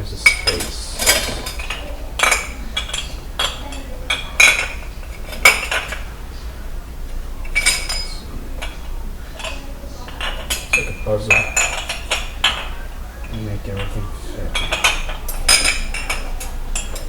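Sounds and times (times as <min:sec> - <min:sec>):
dishes and cutlery clinking: 0:00.0 - 0:17.0.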